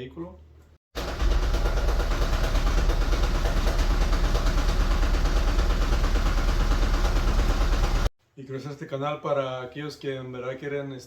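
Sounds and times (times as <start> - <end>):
engine running rough with rattle: 1.0 - 8.1.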